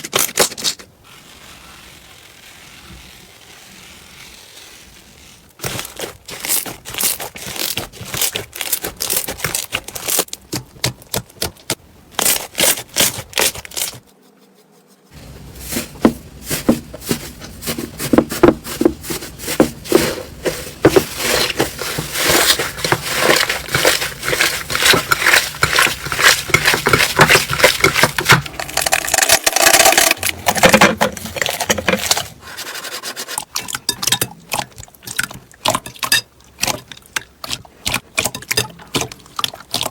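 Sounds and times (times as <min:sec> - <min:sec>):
slime crackling and popping: 0:00.1 - 0:11.5.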